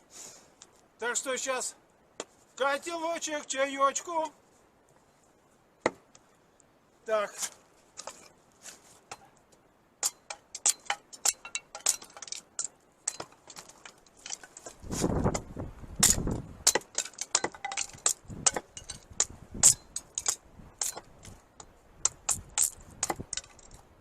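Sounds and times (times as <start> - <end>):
rustling crunch: 2.2 - 5.4, 7.2 - 9.5, 11.8 - 21.5
metallic clinks and knocks: 10.0 - 14.8, 16.0 - 21.4, 22.3 - 23.8.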